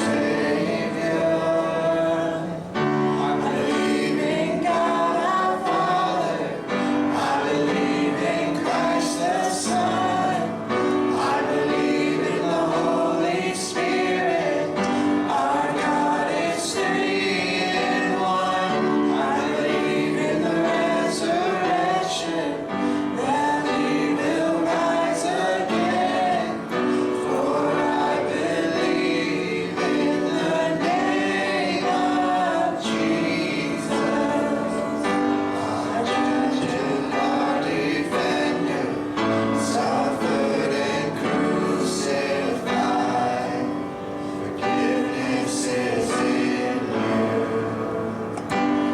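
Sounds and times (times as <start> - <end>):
choir singing gospel song: 0.0 - 48.9.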